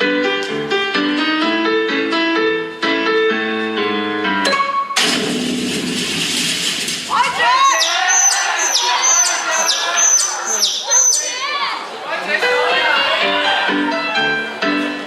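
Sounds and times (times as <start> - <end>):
piano music: 0.0 - 6.8, 12.3 - 15.0
loud rushing noise: 5.0 - 7.8.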